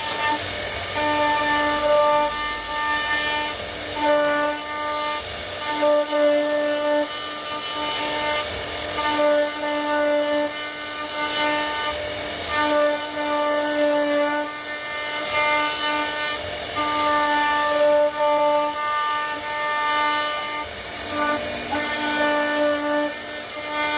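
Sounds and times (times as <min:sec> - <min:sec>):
router spindle whining cutting wood: 0:00.0 - 0:23.9.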